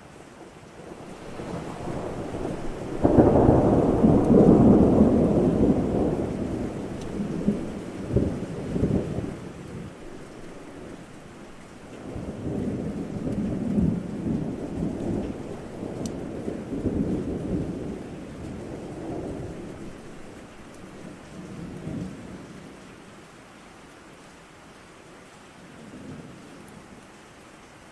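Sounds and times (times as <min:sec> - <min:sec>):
steady rain: 0:00.0 - 0:27.9
rolling thunder rumbling: 0:00.9 - 0:11.1, 0:12.0 - 0:22.7.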